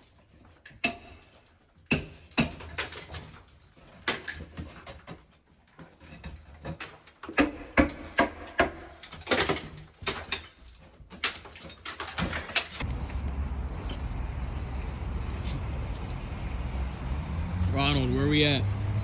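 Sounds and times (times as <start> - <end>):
tools knocking off tile: 0.0 - 12.8.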